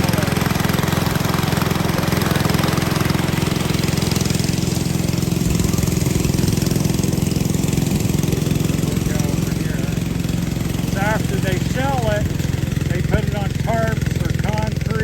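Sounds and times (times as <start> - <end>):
engine running: 0.0 - 15.0.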